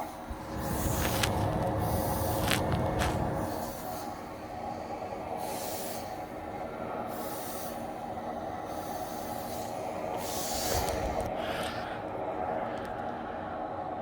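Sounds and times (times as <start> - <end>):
rushes of air: 0.2 - 4.0.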